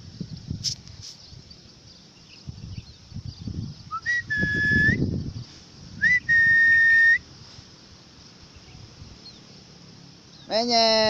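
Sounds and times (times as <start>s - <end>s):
person whistling: 3.9s - 5.0s, 6.0s - 7.2s.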